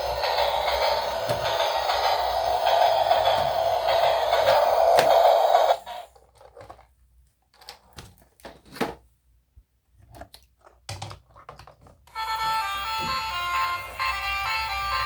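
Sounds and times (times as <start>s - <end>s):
loud steady noise: 0.0s - 5.8s
music: 0.0s - 5.8s, 12.1s - 15.0s.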